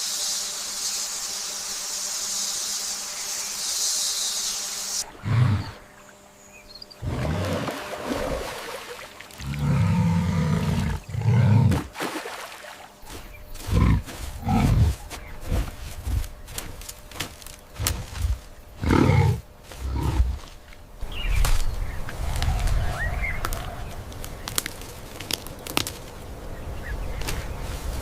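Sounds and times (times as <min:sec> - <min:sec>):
large animal growling and roaring: 0:07.0 - 0:08.3, 0:09.4 - 0:11.9, 0:13.6 - 0:15.7, 0:17.8 - 0:20.6.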